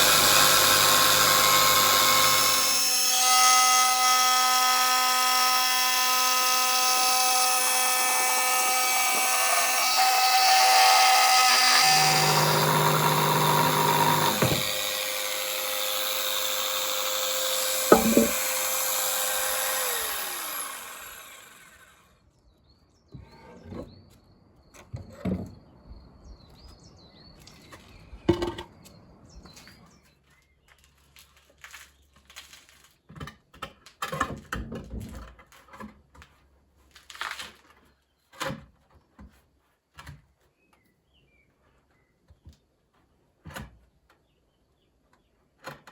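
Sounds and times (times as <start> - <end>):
power tool whining: 0.0 - 22.0
knocks and taps: 17.9 - 18.5.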